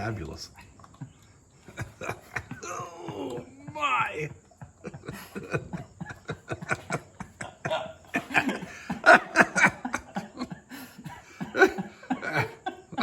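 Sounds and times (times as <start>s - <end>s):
men laughing: 0.6s - 13.0s
indistinct talk: 1.7s - 4.5s.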